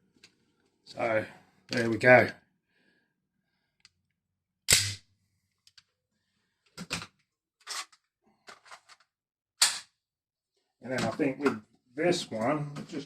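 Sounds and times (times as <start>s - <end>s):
loud sharp pistol shot: 4.7s - 5.0s
weaker pistol pops: 4.7s - 5.0s.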